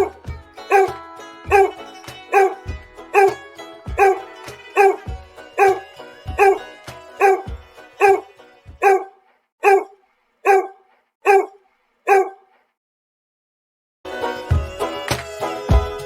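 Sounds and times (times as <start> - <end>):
background music: 0.0 - 9.1, 14.1 - 16.0
dog barking: 0.7 - 3.4, 4.0 - 5.8, 6.4 - 12.6.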